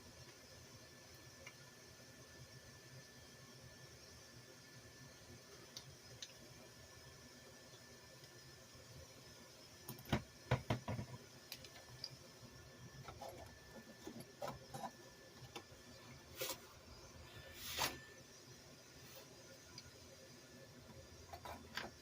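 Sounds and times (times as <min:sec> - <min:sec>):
small parts and tools clicking: 0:10.8 - 0:12.2.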